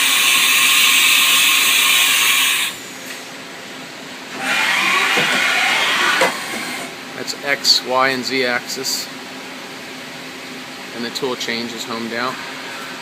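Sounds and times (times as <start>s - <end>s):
machine axis drives whirring: 4.3s - 6.9s.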